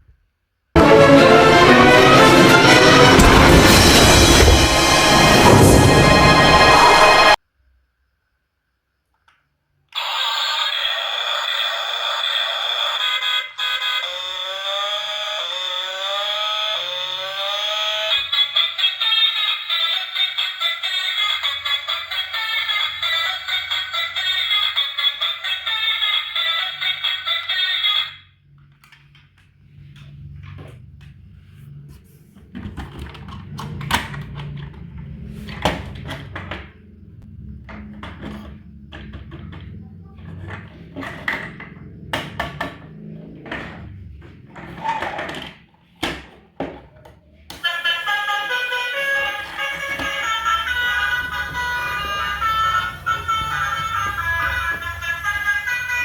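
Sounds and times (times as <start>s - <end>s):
rising siren-like wail: 0.8s - 7.4s, 13.6s - 18.4s, 47.6s - 56.0s
toy electronic buzzing sound: 9.9s - 28.2s, 47.6s - 56.0s.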